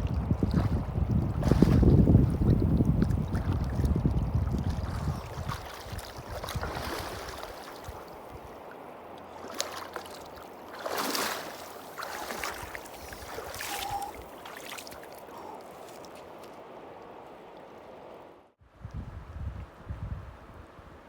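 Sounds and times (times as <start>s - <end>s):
splashes in water: 0.4s - 16.6s
river flowing: 5.5s - 18.5s.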